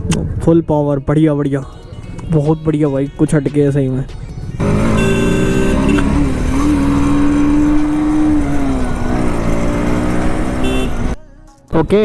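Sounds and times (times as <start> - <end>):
motorcycle engine revving high: 4.6 - 11.2.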